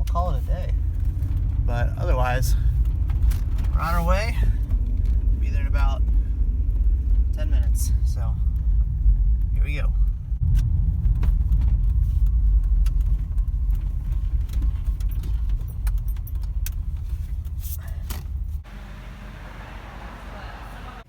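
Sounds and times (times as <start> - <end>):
road and engine rumble: 0.0 - 21.0
light clicks and rattles: 2.6 - 5.4, 8.4 - 18.6.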